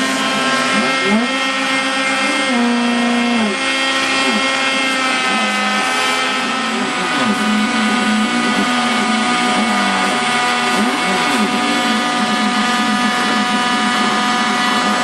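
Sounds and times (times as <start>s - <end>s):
router spindle whine: 0.0s - 15.0s
stepper motors humming: 0.0s - 15.0s.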